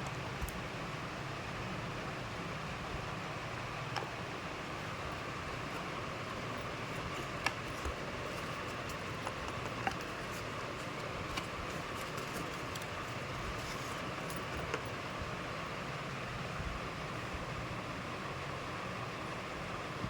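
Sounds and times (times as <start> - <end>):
steady background hiss: 0.0 - 20.0
faint handling clicks and taps: 3.9 - 15.0.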